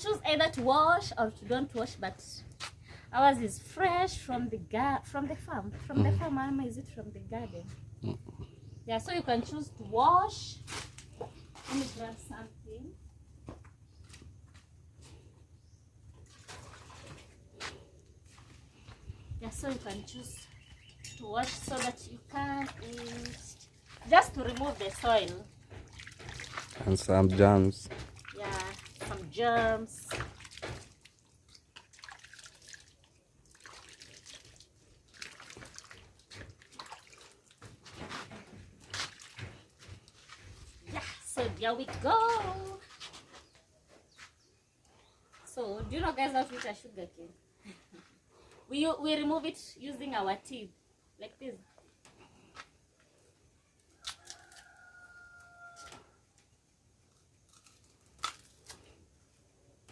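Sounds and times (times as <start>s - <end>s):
water splashing and dripping: 16.2s - 17.5s, 21.4s - 40.7s
sugarcane rind tearing: 53.9s - 54.8s, 57.0s - 59.1s.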